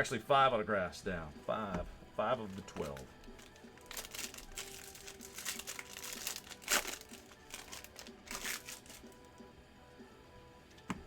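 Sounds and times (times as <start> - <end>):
foil wrapper crinkling: 2.5 - 9.3.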